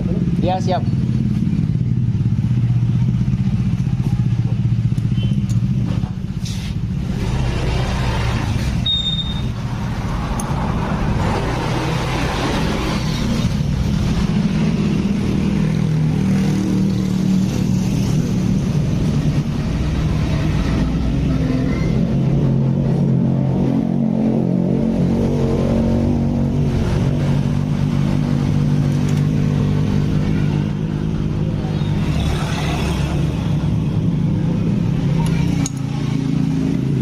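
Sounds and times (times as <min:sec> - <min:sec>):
motorcycle engine idling: 0:00.0 - 0:07.0.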